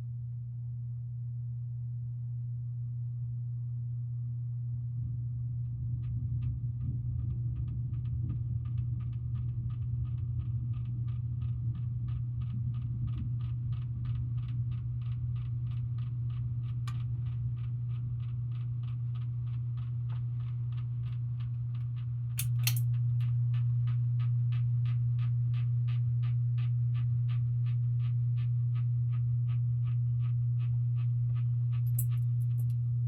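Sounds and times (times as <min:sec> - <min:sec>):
ceiling fan motor hum: 0:00.0 - 0:33.0
fan clicking: 0:22.3 - 0:23.0, 0:31.9 - 0:32.8.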